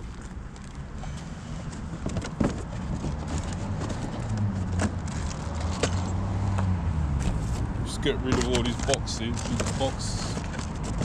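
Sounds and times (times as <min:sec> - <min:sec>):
clicks and knocks of small parts: 0:08.2 - 0:11.0.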